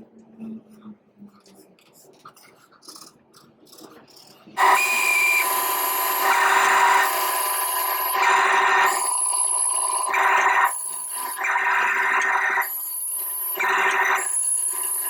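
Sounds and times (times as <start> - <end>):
bandsaw cutting wood: 4.6 - 15.0.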